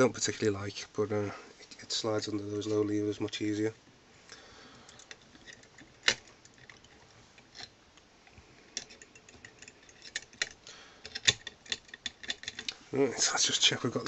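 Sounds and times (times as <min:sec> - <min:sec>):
lock pick clicking in lock: 0:08.8 - 0:12.7.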